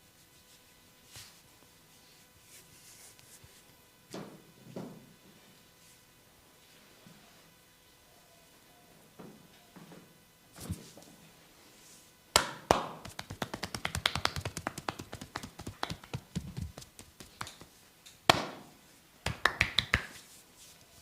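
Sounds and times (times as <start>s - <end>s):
hands slapping skin: 12.4s - 17.7s, 19.3s - 20.2s
fast light tapping on skin: 13.0s - 17.7s.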